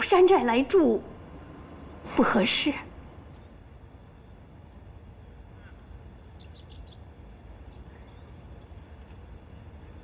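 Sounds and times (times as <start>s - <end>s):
low steady rumble: 0.0s - 6.4s.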